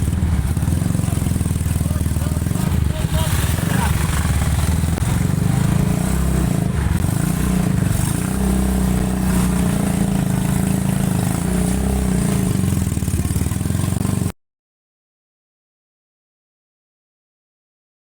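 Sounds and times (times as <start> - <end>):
small engine running: 0.0 - 14.3.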